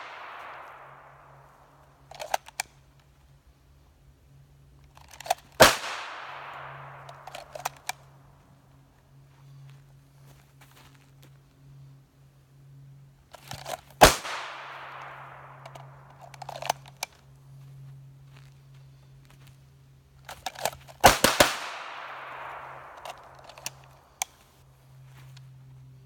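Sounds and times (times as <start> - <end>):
pistol shots with echo: 0.0 - 1.5, 5.6 - 7.6, 14.0 - 16.1, 21.0 - 23.9.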